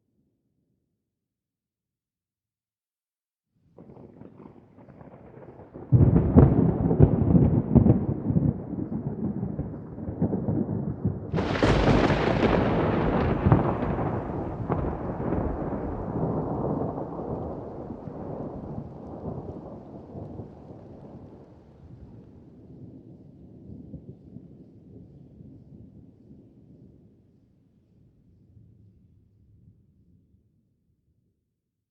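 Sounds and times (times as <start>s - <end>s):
thunder rumbling: 3.8s - 24.1s
sharp thunder crack: 4.9s - 19.8s.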